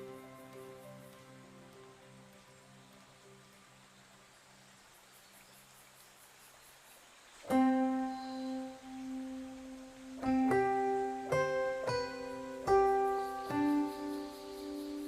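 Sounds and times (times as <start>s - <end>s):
piano notes: 0.0s - 3.4s, 7.5s - 15.0s.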